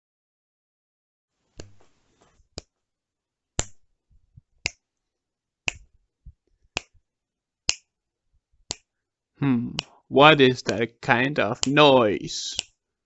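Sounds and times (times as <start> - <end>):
sharp regular ticking: 9.6 - 12.8.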